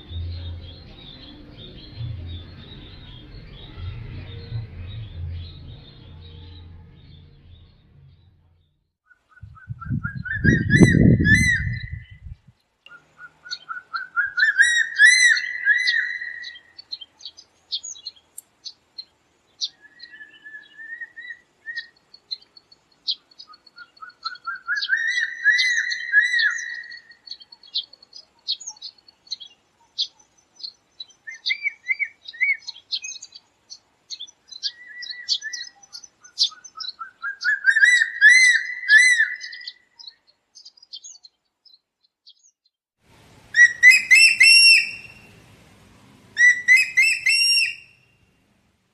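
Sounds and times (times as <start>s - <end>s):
low rumble: 0.0s - 8.8s, 9.4s - 12.5s
eagle whistled calls: 9.3s - 12.3s, 12.9s - 16.8s, 19.7s - 22.0s, 23.4s - 27.4s, 30.0s - 33.4s, 34.1s - 40.2s, 43.5s - 45.4s, 46.4s - 48.1s.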